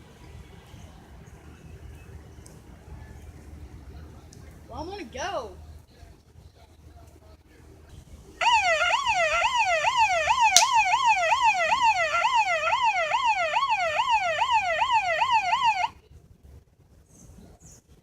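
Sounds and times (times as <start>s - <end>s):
electronic yelp siren: 8.4s - 16.0s
sharp click: 10.5s - 10.8s.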